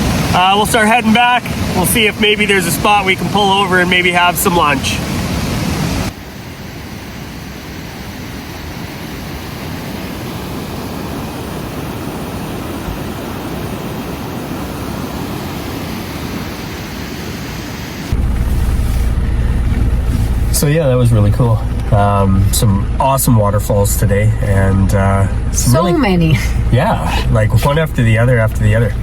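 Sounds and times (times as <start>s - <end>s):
rushing water: 0.0s - 22.0s
vehicle engine and road rumble: 18.1s - 29.0s.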